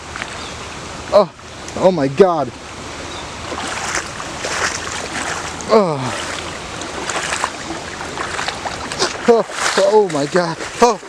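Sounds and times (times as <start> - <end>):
feet wading through water: 2.9 - 11.0.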